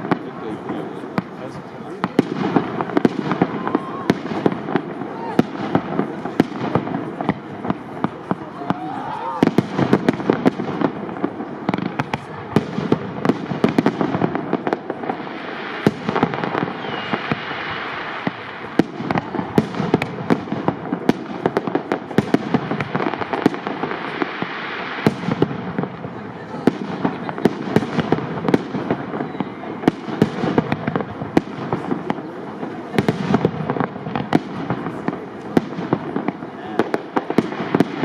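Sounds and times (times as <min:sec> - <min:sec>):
firework bangs: 0:00.0 - 0:38.0
wash of small firework bursts: 0:00.0 - 0:38.0.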